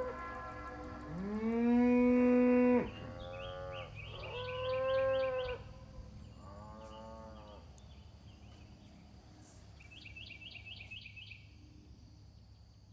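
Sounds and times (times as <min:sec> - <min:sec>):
cattle mooing: 0:00.0 - 0:05.6
bird chirping: 0:02.9 - 0:05.6.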